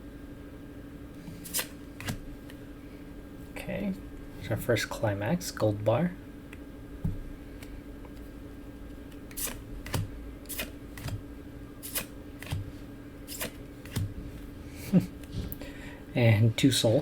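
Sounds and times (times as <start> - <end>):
low steady hum: 0.0 - 17.0
trading cards snapping and sliding: 1.4 - 2.2, 9.1 - 11.2, 11.8 - 12.7, 13.3 - 14.1.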